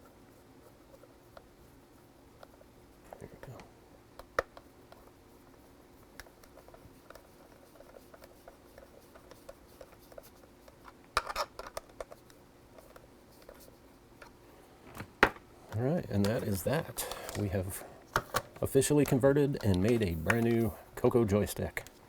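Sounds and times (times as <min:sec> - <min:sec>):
plastic parts clicking and rattling: 0:06.2 - 0:13.6, 0:16.2 - 0:20.7.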